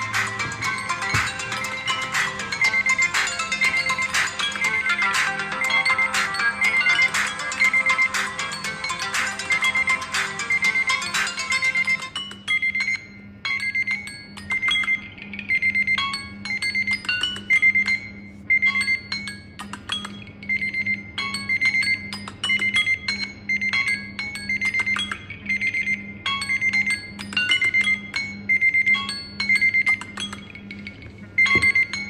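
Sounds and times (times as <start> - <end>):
steady low hum: 0.0 - 12.1
smartphones ringing: 0.0 - 19.1, 24.6 - 32.0.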